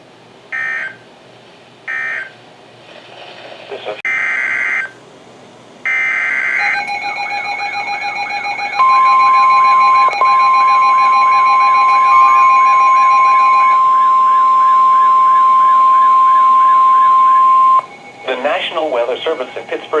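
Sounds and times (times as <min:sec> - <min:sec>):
steady warning alarm tone: 0:00.5 - 0:01.1, 0:01.9 - 0:02.4, 0:04.1 - 0:05.0, 0:05.8 - 0:20.0
warbling alert siren: 0:00.6 - 0:01.0, 0:01.9 - 0:02.4, 0:04.1 - 0:05.0, 0:05.9 - 0:20.0
harsh digital data screech: 0:05.9 - 0:20.0.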